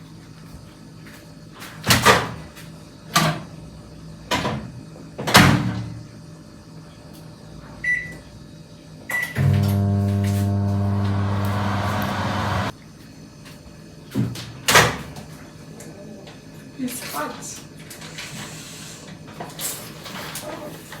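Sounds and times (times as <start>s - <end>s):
microwave oven humming: 9.1s - 12.7s.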